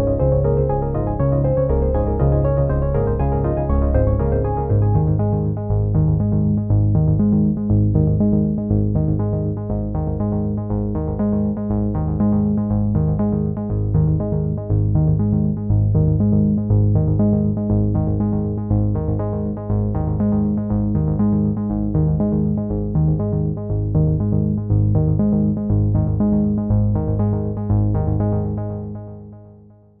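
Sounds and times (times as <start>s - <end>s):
background music with repeated notes: 0.0s - 30.0s.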